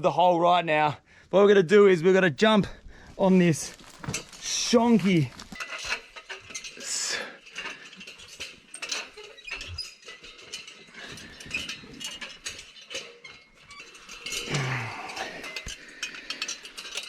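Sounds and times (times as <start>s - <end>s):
metal ladder clinks and scrapes: 3.5s - 17.0s.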